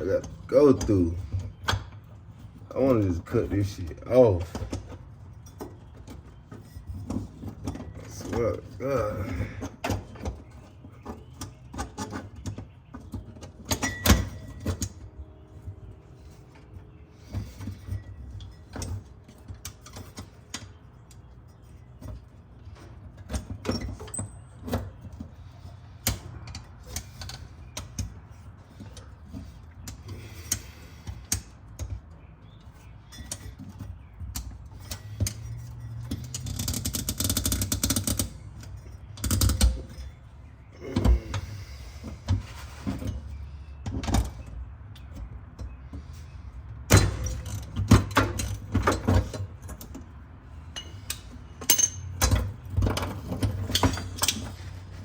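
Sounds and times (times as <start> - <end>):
hand tools clicking on metal: 28.8 - 40.1, 50.8 - 54.7
rasping and scraping: 39.8 - 43.8.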